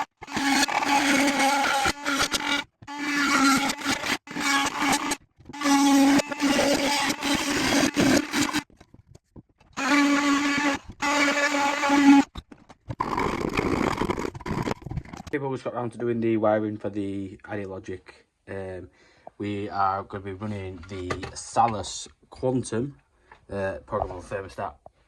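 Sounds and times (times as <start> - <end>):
small electric motor humming: 0.0 - 8.7, 9.8 - 12.3.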